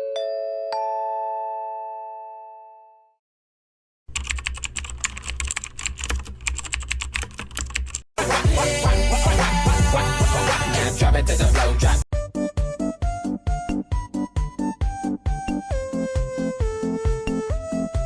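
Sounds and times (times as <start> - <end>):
fast keyboard typing: 4.1 - 8.1
upbeat music with strong beat: 8.2 - 18.0.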